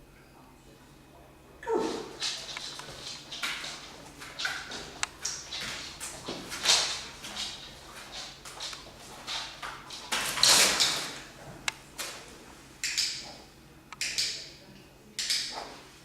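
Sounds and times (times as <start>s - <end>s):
sharp clicks: 12.8s - 13.3s, 13.9s - 14.4s.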